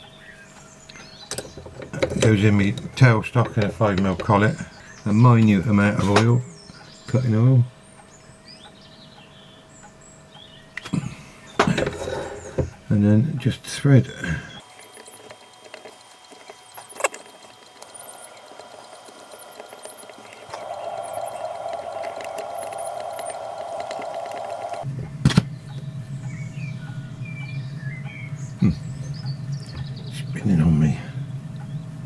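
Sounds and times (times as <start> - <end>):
small lathe running: 14.6 - 24.9.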